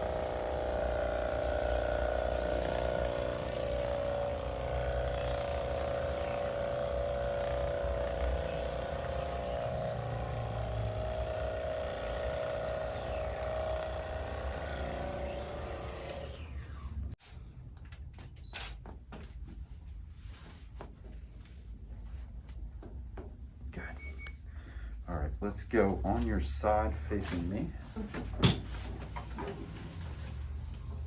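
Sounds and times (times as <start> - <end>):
electric motor humming: 0.0 - 17.2.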